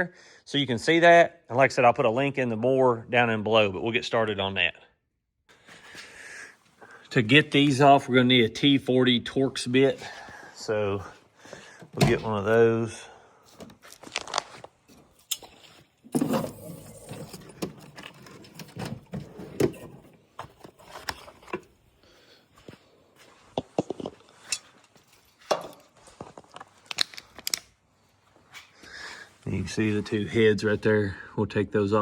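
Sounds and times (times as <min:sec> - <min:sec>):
hand tools clinking and rattling: 0:23.8 - 0:26.0.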